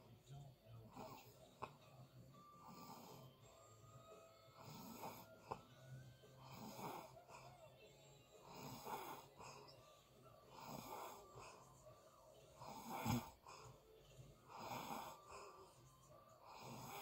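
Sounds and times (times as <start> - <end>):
person snoring: 0.9 - 1.7, 2.6 - 3.4, 4.6 - 5.7, 6.4 - 7.6, 8.4 - 9.8, 10.4 - 11.6, 12.4 - 13.8, 14.4 - 15.8, 16.4 - 17.0.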